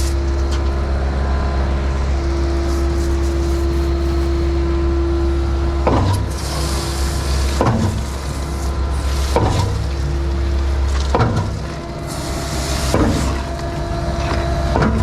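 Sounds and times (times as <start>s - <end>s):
concrete pump running: 0.0s - 15.0s
pump clunking: 5.8s - 15.0s.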